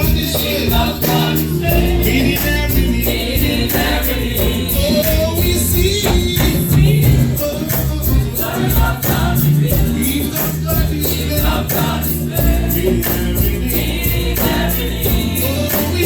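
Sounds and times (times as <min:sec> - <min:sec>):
bass line: 0:00.0 - 0:16.0
choir singing with band: 0:00.0 - 0:16.0
shaker or tambourine beat: 0:00.0 - 0:16.0.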